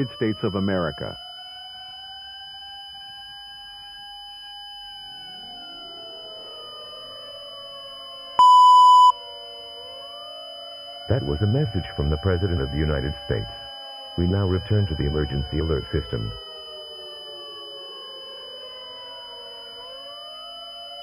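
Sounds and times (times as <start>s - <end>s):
faint high whine: 8.4s - 9.2s
loud steady beep: 8.4s - 9.2s.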